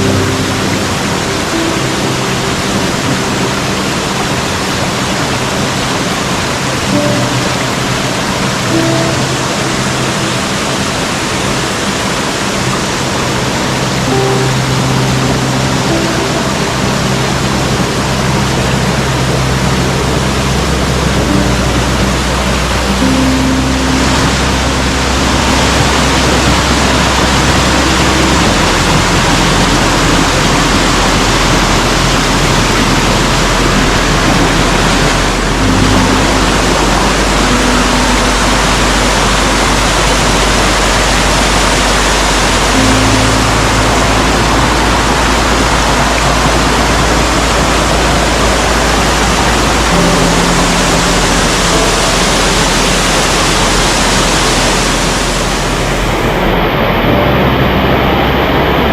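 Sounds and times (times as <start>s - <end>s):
faint low held music notes: 0.0s - 58.9s
waterfall roaring: 0.0s - 58.9s.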